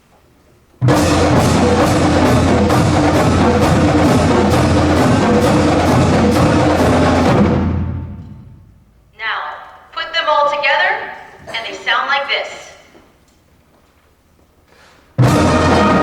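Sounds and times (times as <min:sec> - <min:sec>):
drumline playing: 0:00.8 - 0:08.7, 0:15.2 - 0:16.0.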